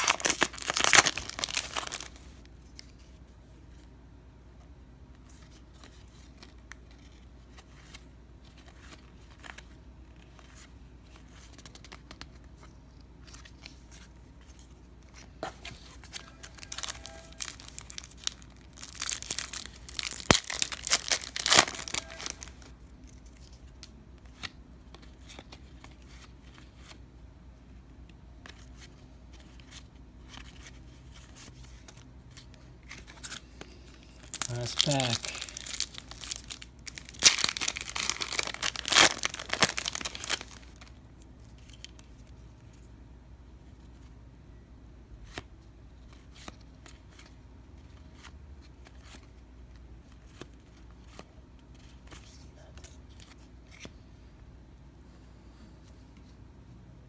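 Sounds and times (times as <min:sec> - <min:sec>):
wrapper crinkling and ripping: 0:00.0 - 0:02.3, 0:16.0 - 0:22.7, 0:34.2 - 0:40.9
cards being handled: 0:05.1 - 0:27.0, 0:28.0 - 0:42.8, 0:45.2 - 0:54.0.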